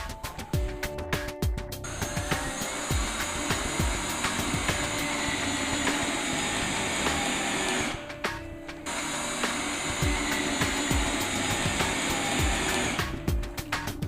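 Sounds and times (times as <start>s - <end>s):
background music: 0.0s - 14.0s
power drill driving screws: 1.9s - 8.1s, 8.9s - 13.2s.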